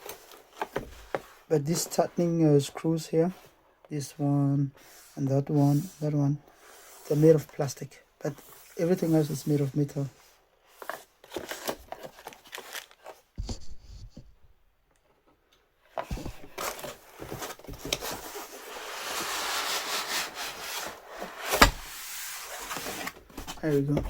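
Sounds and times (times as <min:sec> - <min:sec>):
cardboard knocks and scrapes: 0:00.6 - 0:01.4, 0:10.9 - 0:14.5, 0:16.0 - 0:24.0
packing rubbing and rustling: 0:10.7 - 0:13.3, 0:16.0 - 0:24.0.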